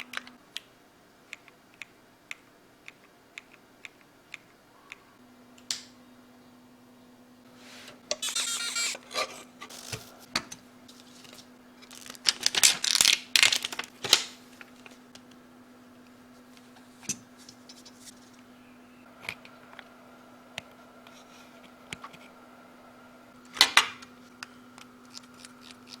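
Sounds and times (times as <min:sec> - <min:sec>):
faint steady hum: 0:00.0 - 0:26.0
packaging being handled: 0:10.9 - 0:15.0.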